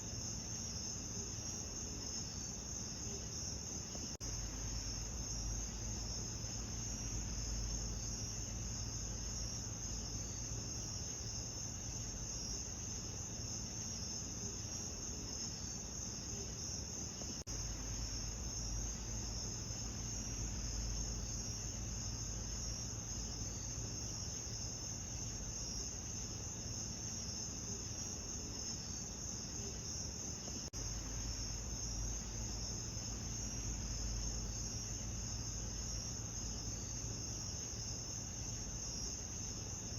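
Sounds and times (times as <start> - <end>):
crickets chirring: 0.0 - 39.9.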